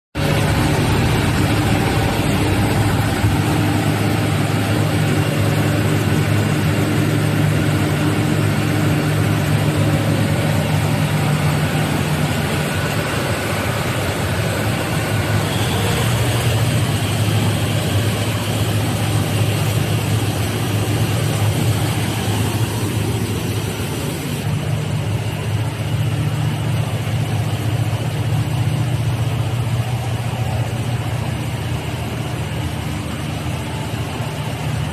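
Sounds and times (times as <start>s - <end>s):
diesel generator droning: 0.2s - 34.9s
faint high whine: 8.9s - 24.5s.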